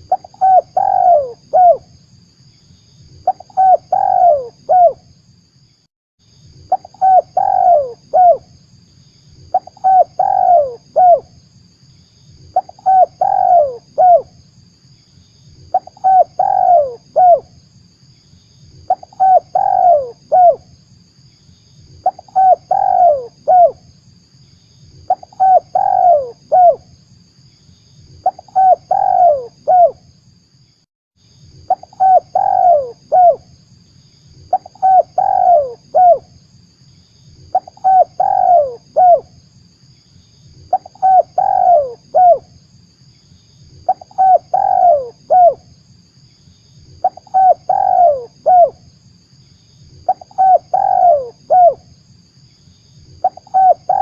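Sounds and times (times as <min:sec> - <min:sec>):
dove cooing: 0:00.0 - 0:01.8, 0:03.2 - 0:05.0, 0:06.7 - 0:08.5, 0:09.5 - 0:11.2, 0:12.6 - 0:14.3, 0:15.7 - 0:17.5, 0:18.9 - 0:20.6, 0:22.0 - 0:23.8, 0:25.1 - 0:26.8, 0:28.2 - 0:30.0, 0:31.7 - 0:33.4, 0:34.5 - 0:36.3, 0:37.5 - 0:39.3, 0:40.7 - 0:42.5, 0:43.8 - 0:45.6, 0:47.0 - 0:48.8, 0:50.1 - 0:51.8, 0:53.2 - 0:54.0.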